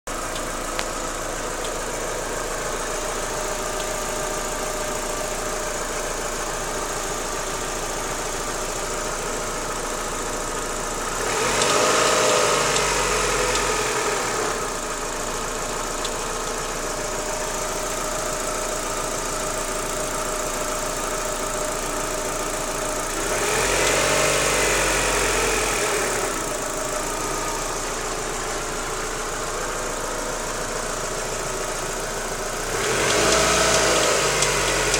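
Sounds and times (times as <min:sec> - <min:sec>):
car engine idling with knock: 0:00.1 - 0:34.9
engine revving: 0:11.1 - 0:14.8, 0:22.8 - 0:34.9.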